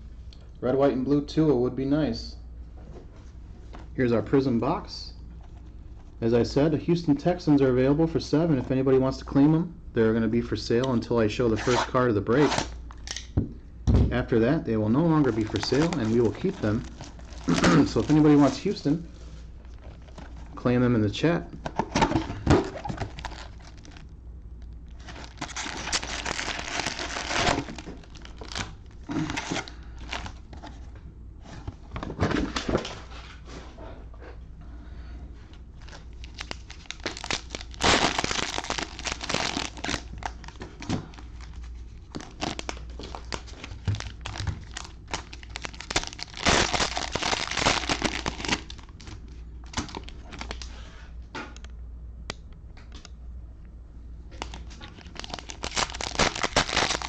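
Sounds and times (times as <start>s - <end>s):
plastic wrappers crinkling and tearing: 15.1s - 19.0s, 22.0s - 24.1s, 24.8s - 30.5s, 35.8s - 50.7s, 54.3s - 57.0s.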